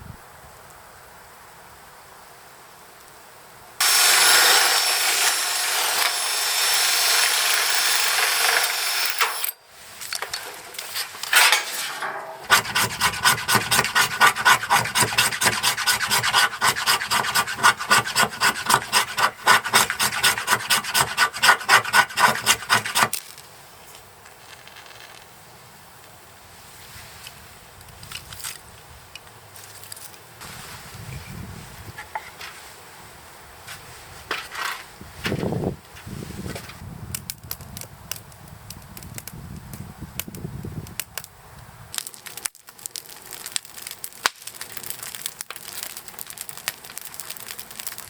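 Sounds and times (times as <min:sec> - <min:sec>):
hand saw sawing wood: 0:03.8 - 0:09.5, 0:10.4 - 0:23.2.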